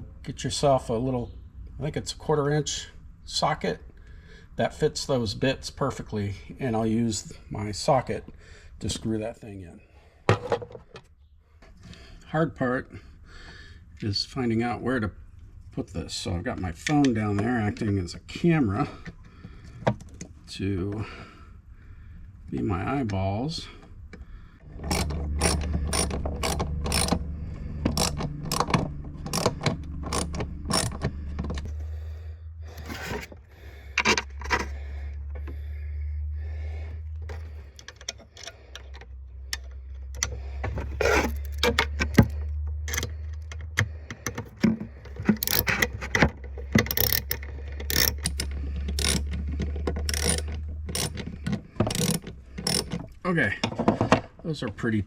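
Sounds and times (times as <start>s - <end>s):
steady low hum: 11.3s - 54.4s
socket ratchet clicking: 24.7s - 31.7s, 37.3s - 53.2s.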